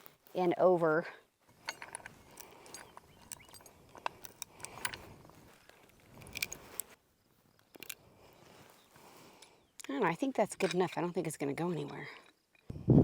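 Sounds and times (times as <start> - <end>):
metal hardware clinking: 1.6 - 5.1, 5.8 - 6.9, 10.5 - 12.7.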